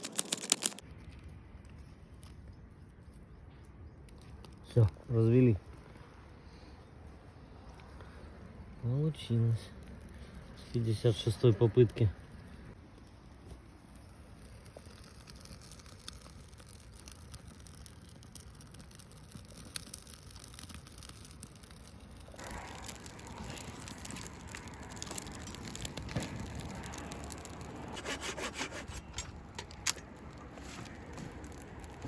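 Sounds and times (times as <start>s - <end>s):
campfire crackling: 0.0s - 32.0s
rasping strokes: 14.4s - 32.0s
rough rustling noise: 21.3s - 32.0s.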